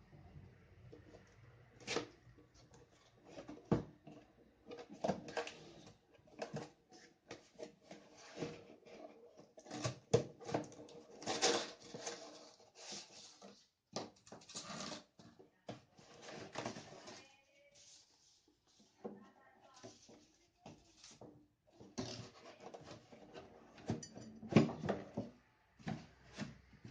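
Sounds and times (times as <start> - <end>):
cardboard and plastic packaging rustling: 1.8 - 26.9.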